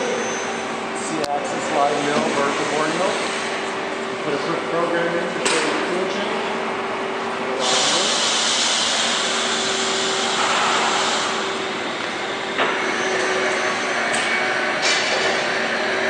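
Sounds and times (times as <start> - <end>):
machine hum: 0.0 - 16.0
loud hiss: 7.6 - 11.5.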